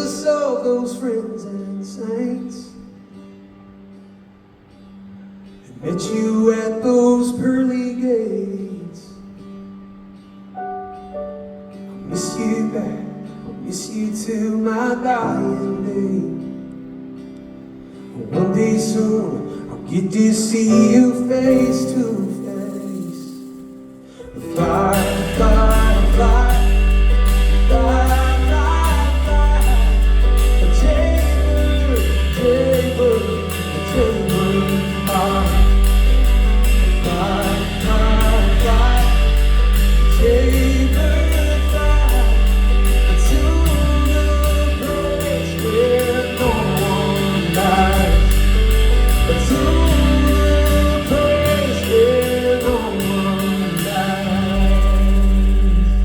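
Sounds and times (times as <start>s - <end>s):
wordless singing: 24.2s - 56.0s
pop-rock band playing: 24.5s - 56.0s.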